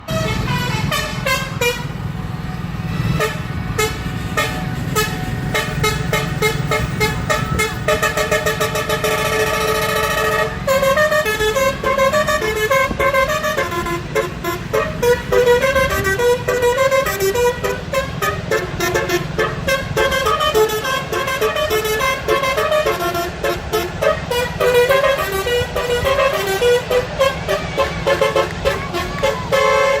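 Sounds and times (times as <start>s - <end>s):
train horn playing pitched notes: 0.0s - 30.0s.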